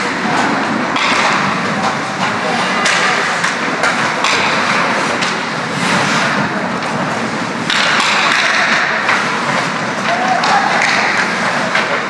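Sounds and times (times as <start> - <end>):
skate blades scraping ice: 0.0 - 12.0
stick and puck knocks: 0.3 - 5.5, 7.6 - 12.0.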